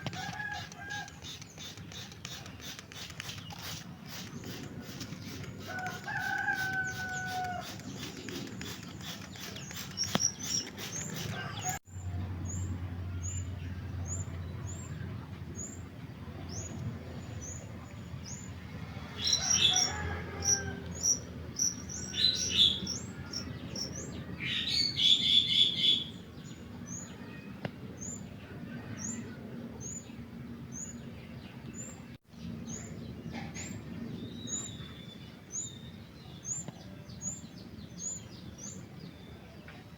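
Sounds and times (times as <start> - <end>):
drawn-out bird call: 0.0 - 11.8
bulbul chirping: 0.1 - 11.8.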